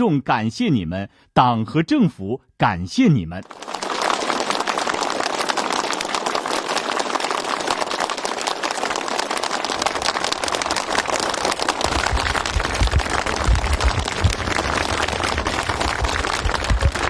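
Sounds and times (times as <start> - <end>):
crowd applauding: 3.4 - 17.0
low thumps: 11.8 - 17.0.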